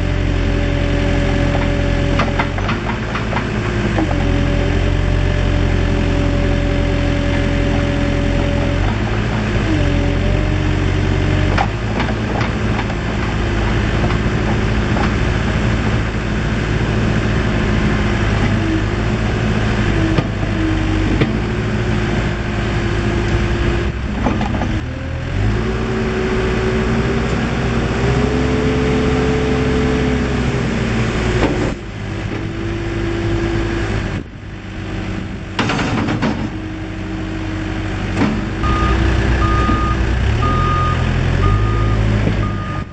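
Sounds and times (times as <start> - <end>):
diesel engine revving: 0.0 - 42.9
reversing beeper: 38.6 - 42.9.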